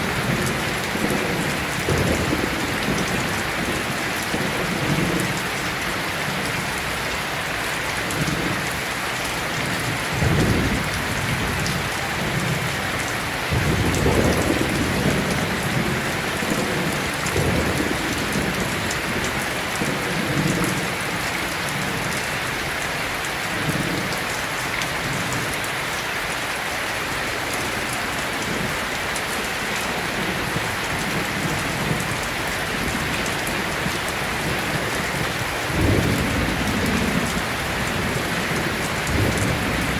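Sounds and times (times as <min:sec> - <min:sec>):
thunder rumbling: 0:00.0 - 0:05.5, 0:09.5 - 0:22.1, 0:29.9 - 0:39.9
heavy rain: 0:00.0 - 0:39.9.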